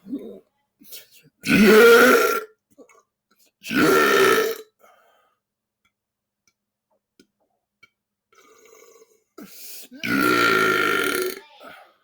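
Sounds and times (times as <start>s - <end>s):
person belching: 1.4s - 2.5s, 3.7s - 4.7s, 10.0s - 11.5s.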